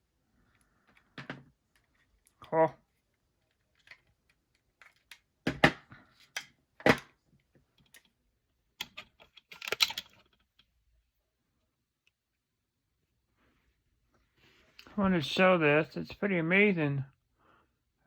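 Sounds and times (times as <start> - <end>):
rattling clicks: 8.8 - 10.4.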